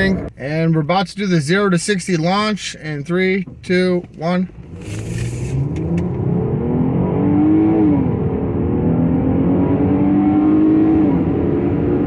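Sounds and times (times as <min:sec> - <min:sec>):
road noise: 0:00.0 - 0:12.0
car engine accelerating: 0:03.4 - 0:12.0.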